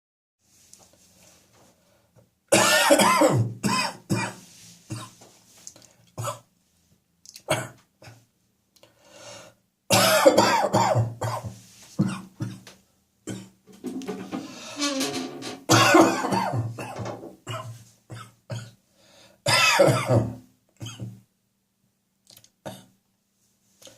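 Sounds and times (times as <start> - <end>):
person coughing: 2.5 - 5.2, 9.9 - 12.7, 15.7 - 18.8, 19.5 - 21.2
person clearing throat: 2.6 - 5.2, 9.9 - 12.7, 15.7 - 18.8, 19.5 - 21.2.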